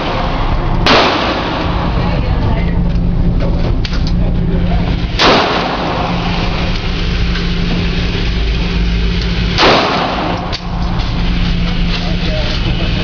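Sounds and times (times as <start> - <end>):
gunshots with reverberating tail: 0.0 - 2.0, 5.1 - 6.8, 9.4 - 10.9
low hum and rumble: 0.0 - 13.0.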